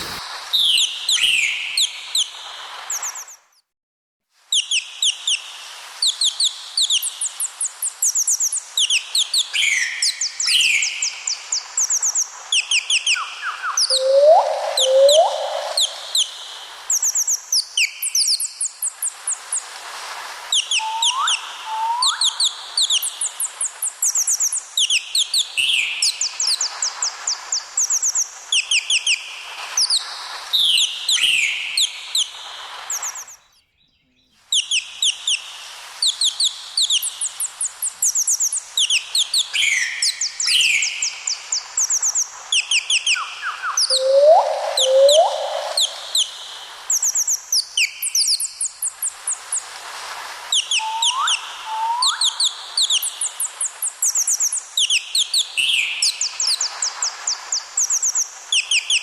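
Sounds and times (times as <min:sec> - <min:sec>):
parrots chirping and twittering: 0:00.0 - 0:00.2
sweeping whistles: 0:00.0 - 0:03.6, 0:04.5 - 0:19.8, 0:20.5 - 0:33.6, 0:34.5 - 0:49.8, 0:50.5 - 0:59.0.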